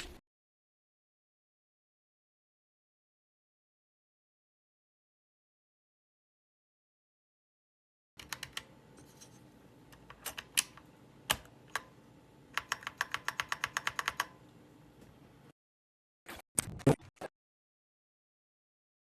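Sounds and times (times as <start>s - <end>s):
mechanical keyboard typing clicks: 8.2s - 8.7s, 12.6s - 14.4s.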